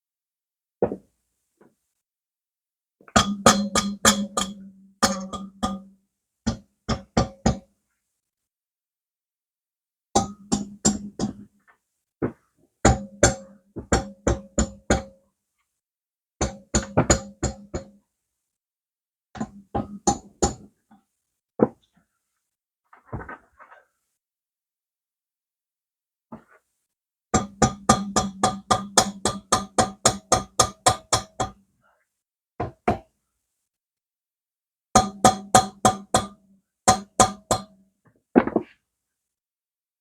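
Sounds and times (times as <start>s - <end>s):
hammer on ringing metal: 35.0s - 37.7s.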